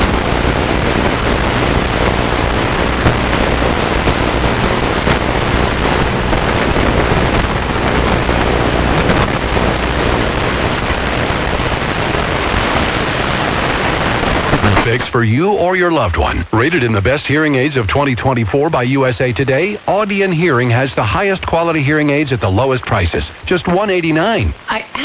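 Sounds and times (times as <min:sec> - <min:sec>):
low hum: 0:00.0 - 0:15.2
radio static hiss: 0:00.0 - 0:25.0.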